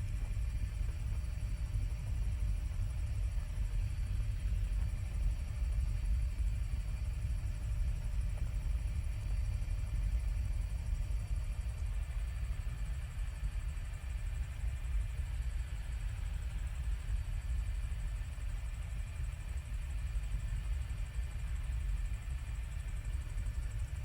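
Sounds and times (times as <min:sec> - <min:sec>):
helicopter low rumble: 0:00.0 - 0:13.9
faint high whine: 0:00.0 - 0:24.0.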